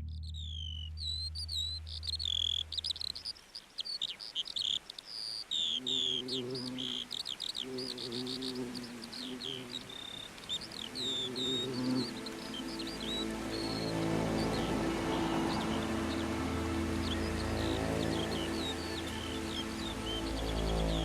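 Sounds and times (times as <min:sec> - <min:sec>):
bird-like chirps: 0:00.0 - 0:21.0
downward-sweeping whistles: 0:09.9 - 0:21.0
low musical tones: 0:10.4 - 0:21.0
low held drone: 0:10.9 - 0:21.0.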